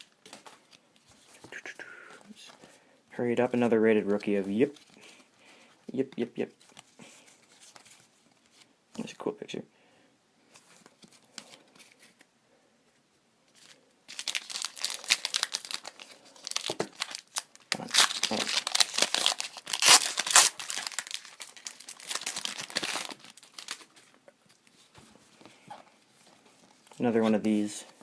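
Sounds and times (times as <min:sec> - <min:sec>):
foil wrapper tearing and crinkling: 0:14.1 - 0:23.9.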